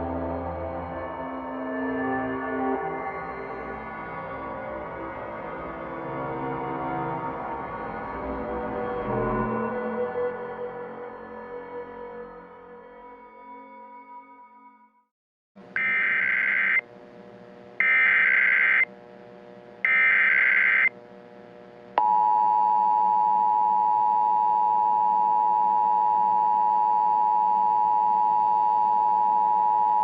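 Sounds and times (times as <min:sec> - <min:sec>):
digital data tone bursts: 0:15.8 - 0:16.8, 0:17.8 - 0:18.9, 0:19.9 - 0:20.9
steady dual tone alert signal: 0:15.8 - 0:16.9, 0:17.8 - 0:19.0, 0:19.8 - 0:21.0.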